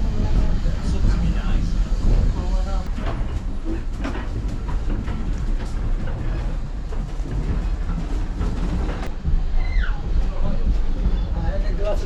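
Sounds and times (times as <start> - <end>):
train rumbling on track: 0.0 - 12.0
wheels clicking over rail joints: 2.0 - 9.2.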